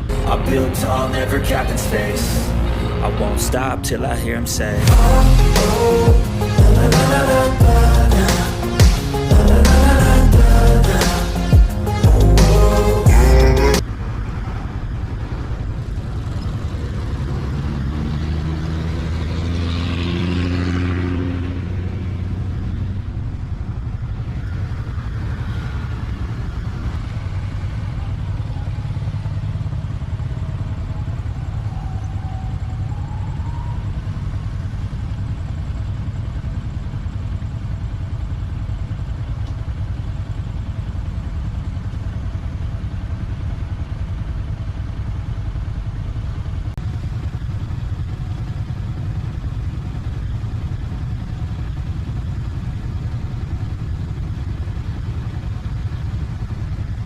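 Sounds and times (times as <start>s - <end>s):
vehicle passing: 0.0s - 23.4s
traffic rumble: 0.0s - 57.0s.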